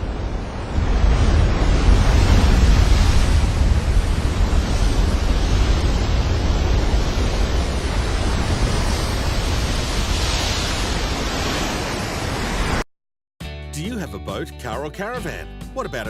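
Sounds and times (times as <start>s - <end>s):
wind buffeting microphone: 0.0s - 11.8s
ocean surf breaking: 0.0s - 12.8s.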